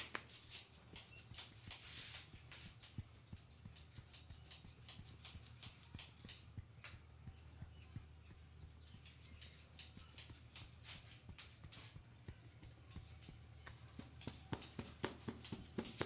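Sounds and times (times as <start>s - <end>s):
fingers rubbing through hair: 0.0s - 16.0s.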